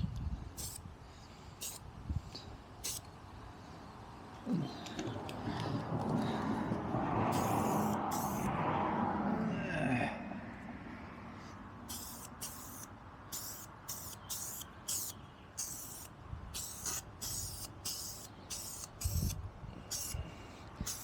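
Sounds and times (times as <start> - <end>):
spray paint hissing bursts: 0.6 - 0.9, 1.6 - 1.9, 2.8 - 3.1, 7.3 - 8.5, 11.9 - 21.0.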